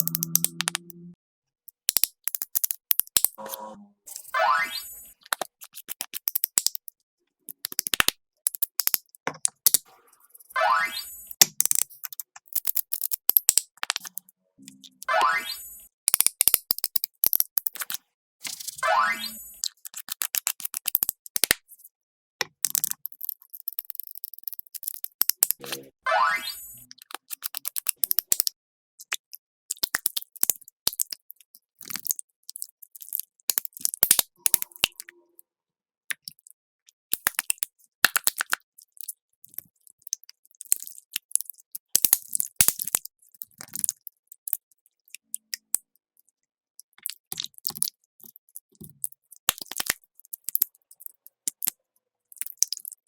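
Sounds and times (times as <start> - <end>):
slime squishing and crackling: 52.3 - 53.0.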